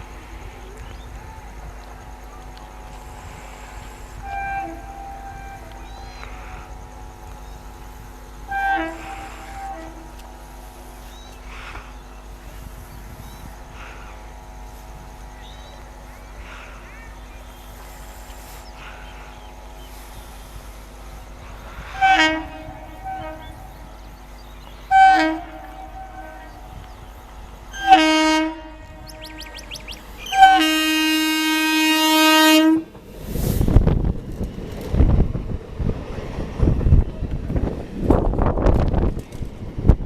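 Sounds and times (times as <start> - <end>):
train rumbling past: 0.0 - 40.0
train horn blasts: 3.8 - 6.8, 8.4 - 10.6, 21.7 - 24.2, 24.8 - 33.0.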